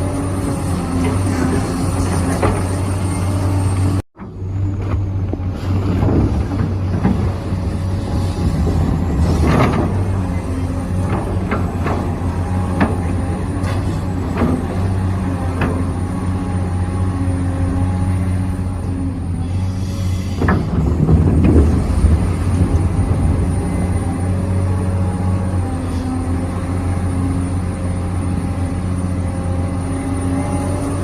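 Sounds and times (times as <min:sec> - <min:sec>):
sharp knocks and clanks: 0:11.0 - 0:16.0.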